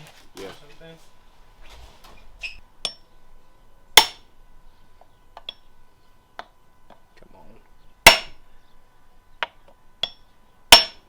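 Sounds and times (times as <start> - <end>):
sharp metallic knock: 4.0 - 4.3, 8.0 - 8.4, 10.0 - 11.0.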